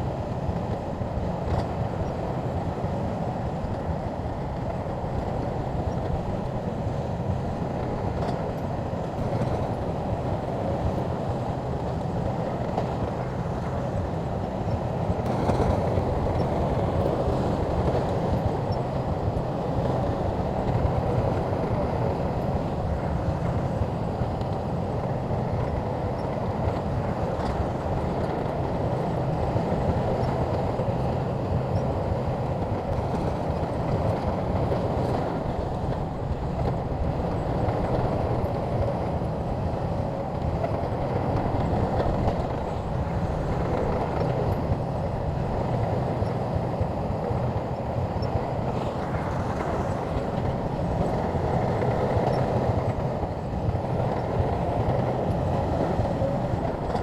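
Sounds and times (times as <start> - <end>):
bulldozer diesel engine running: 0.0 - 57.0.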